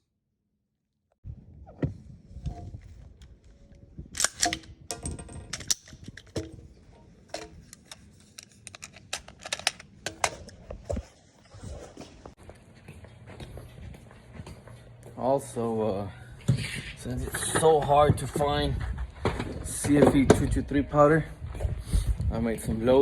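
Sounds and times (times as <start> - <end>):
sharp clicks and knocks: 4.2 - 11.1.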